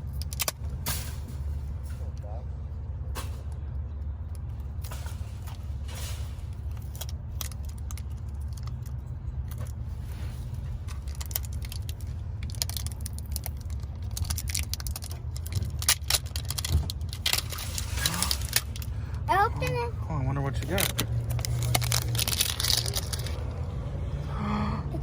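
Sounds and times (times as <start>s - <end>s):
steady low rumble: 0.0s - 25.0s
plastic packaging crackling: 11.0s - 18.9s, 20.7s - 23.4s.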